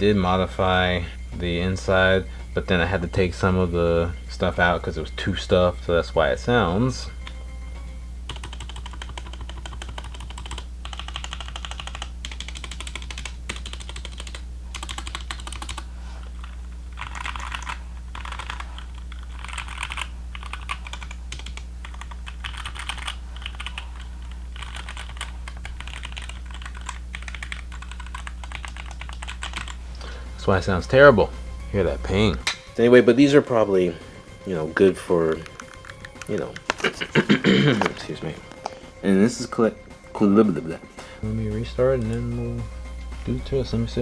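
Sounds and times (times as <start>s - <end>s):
low steady hum: 0.0s - 44.0s
mechanical keyboard typing: 8.3s - 29.8s, 35.3s - 37.2s.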